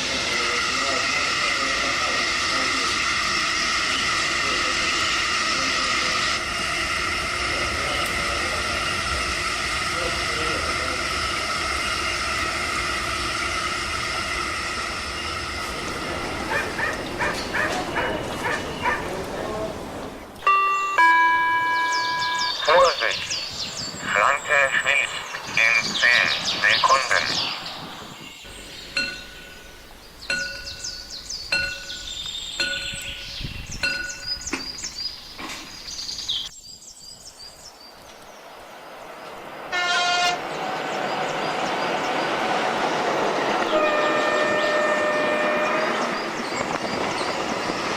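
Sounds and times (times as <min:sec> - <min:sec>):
train rumbling: 0:00.0 - 0:36.5, 0:37.4 - 0:47.9
level crossing warning tones: 0:14.0 - 0:27.4
small dog yapping: 0:16.5 - 0:19.1
train horn blast: 0:39.7 - 0:40.6, 0:43.6 - 0:46.4.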